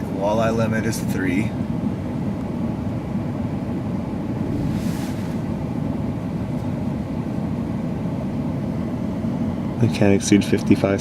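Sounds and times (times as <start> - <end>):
road and engine rumble in car: 0.0 - 11.0
brief hiss: 4.5 - 5.6.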